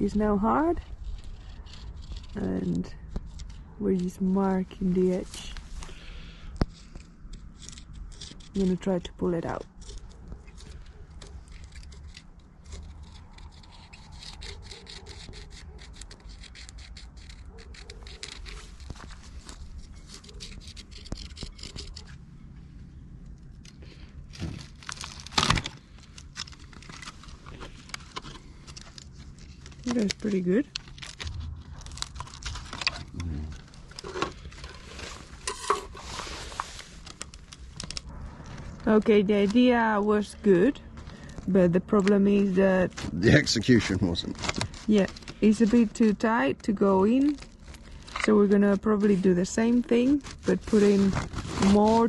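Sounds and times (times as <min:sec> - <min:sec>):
steady low rumble: 0:18.4 - 0:51.8
knocks and scrapes of handled part: 0:31.1 - 0:38.0.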